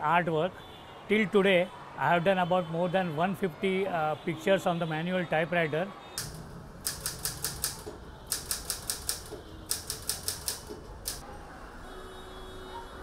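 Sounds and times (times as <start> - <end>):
typewriter keys striking: 6.2 - 11.2.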